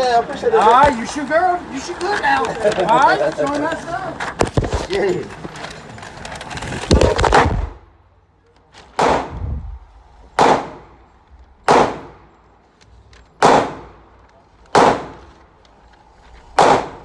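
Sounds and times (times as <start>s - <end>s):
gunshots: 6.7s - 7.9s, 8.9s - 11.0s, 11.6s - 12.3s, 13.4s - 14.0s, 14.7s - 15.4s, 16.5s - 17.0s.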